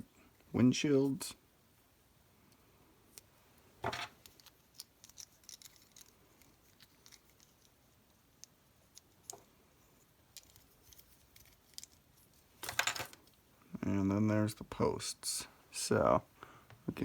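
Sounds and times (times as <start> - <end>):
small toy car parts clicking: 4.2 - 7.8, 10.3 - 12.0.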